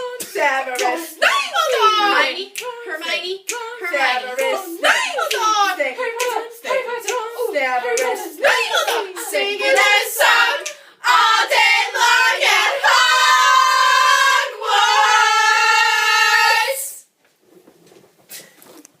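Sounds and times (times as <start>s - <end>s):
faint rustling: 17.2s - 19.0s.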